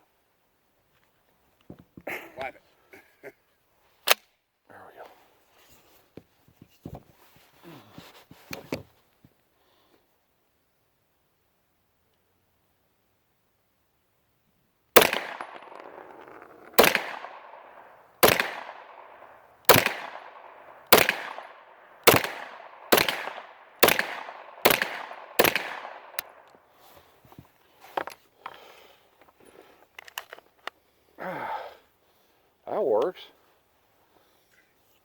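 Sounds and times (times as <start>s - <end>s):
rifle shots with echo: 15.0s - 26.6s.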